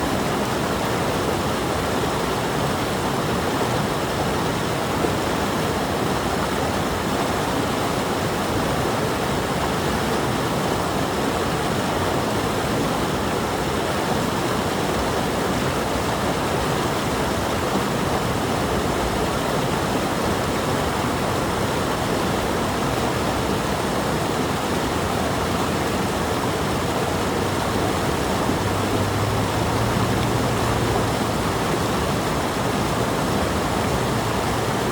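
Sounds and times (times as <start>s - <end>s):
stream water flowing: 0.0s - 34.9s.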